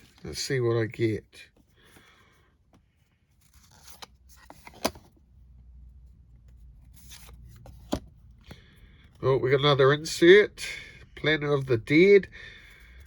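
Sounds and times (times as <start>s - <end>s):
cards being flipped: 3.4s - 5.2s, 6.4s - 8.6s.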